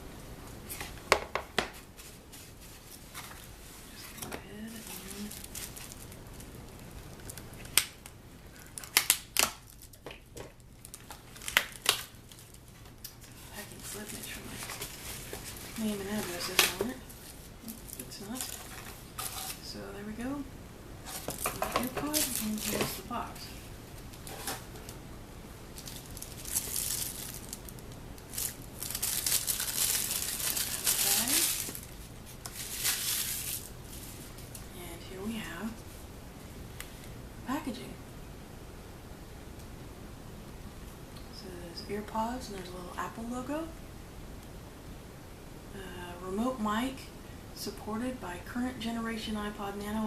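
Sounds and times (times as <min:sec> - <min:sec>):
packaging crinkling and tearing: 0:04.1 - 0:19.6, 0:21.0 - 0:23.1, 0:25.7 - 0:34.6
packaging snipping and ripping: 0:10.8 - 0:12.5, 0:25.8 - 0:33.7.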